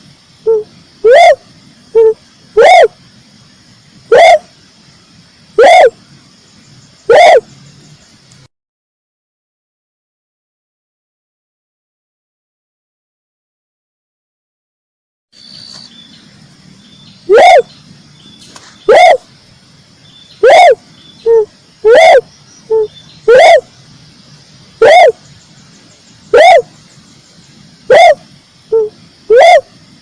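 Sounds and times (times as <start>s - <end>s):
dove calling: 0.0s - 3.1s, 4.0s - 4.7s, 5.6s - 8.1s, 15.4s - 30.0s.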